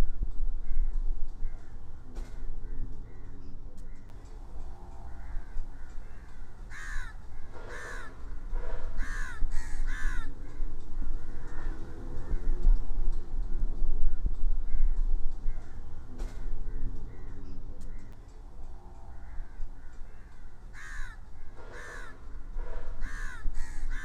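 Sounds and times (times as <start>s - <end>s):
low rumble: 0.0s - 24.0s
harsh cawing animal calls: 4.6s - 12.5s, 16.7s - 24.0s.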